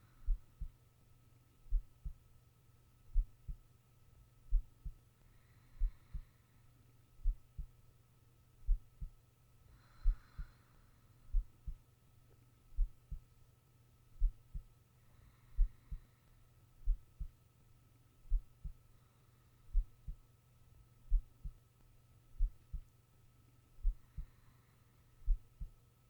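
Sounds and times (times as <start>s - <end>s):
soft slow breaths: 0.0s - 1.0s, 4.4s - 13.4s, 14.2s - 21.7s, 22.4s - 26.0s
faint steady whine: 0.0s - 26.0s
heartbeat thumps: 0.3s - 0.7s, 1.7s - 2.2s, 3.1s - 3.6s, 4.5s - 5.0s, 5.8s - 6.3s, 7.2s - 7.8s, 8.6s - 9.2s, 10.0s - 10.5s, 11.3s - 11.8s, 12.7s - 13.3s, 14.2s - 14.7s, 15.6s - 16.0s, 16.8s - 17.3s, 18.3s - 18.8s, 19.7s - 20.2s, 21.1s - 21.6s, 22.4s - 22.9s, 23.8s - 24.3s, 25.3s - 25.8s.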